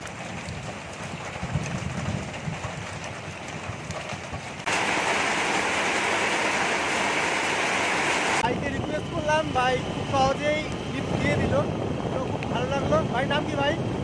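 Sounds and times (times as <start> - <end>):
rain hissing: 4.6 - 8.5.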